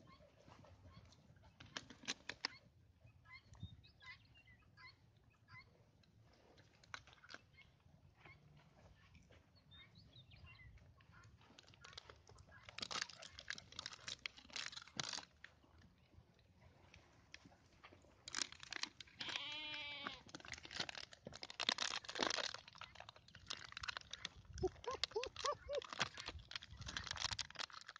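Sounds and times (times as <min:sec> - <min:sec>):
puppy whining: 0:24.6 - 0:26.0.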